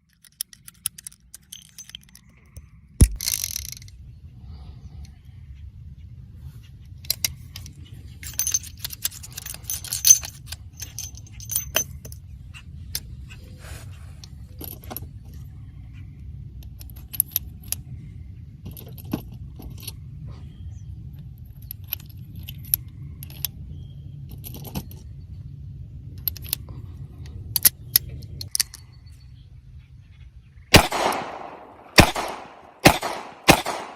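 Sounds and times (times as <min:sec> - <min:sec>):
revolver cartridges clinking: 0:00.0 - 0:04.0, 0:07.1 - 0:12.2, 0:27.6 - 0:29.4, 0:30.7 - 0:33.9
gunshots with ringing tail: 0:30.7 - 0:33.9.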